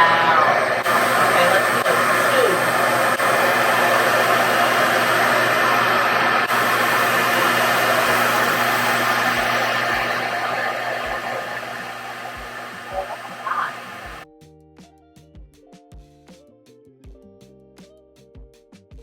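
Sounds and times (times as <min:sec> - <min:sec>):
blow dryer rushing air: 0:00.0 - 0:14.2.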